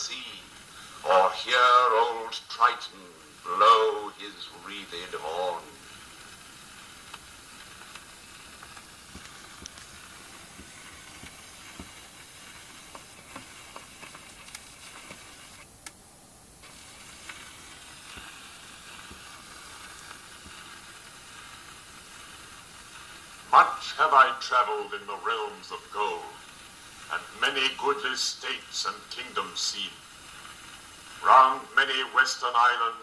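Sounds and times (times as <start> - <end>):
recording hiss: 0.0 - 33.0
faint clicks: 6.0 - 16.0.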